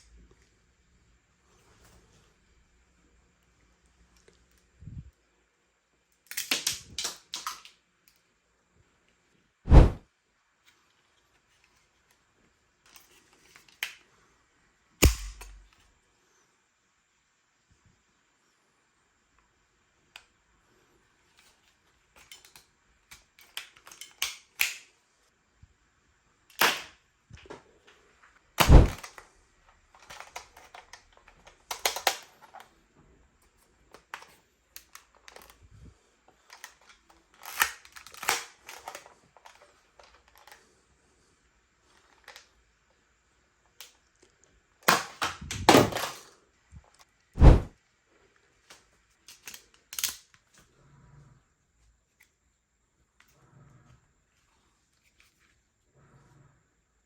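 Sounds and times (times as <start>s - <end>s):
toy gun snaps and thuds: 6.2s - 7.8s, 15.0s - 15.8s, 22.2s - 24.9s, 26.5s - 27.0s, 28.6s - 29.2s, 30.0s - 32.6s, 44.8s - 46.3s, 47.4s - 47.7s, 48.7s - 50.3s
plastic clicks and rattles: 22.2s - 24.9s, 30.0s - 32.7s, 33.9s - 35.6s, 36.4s - 40.6s, 48.7s - 50.6s.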